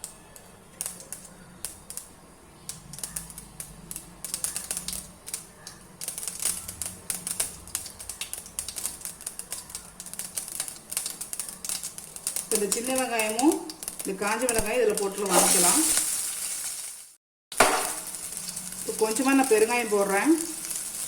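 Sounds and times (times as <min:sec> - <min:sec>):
seeds popping in hot oil: 0:00.0 - 0:21.0.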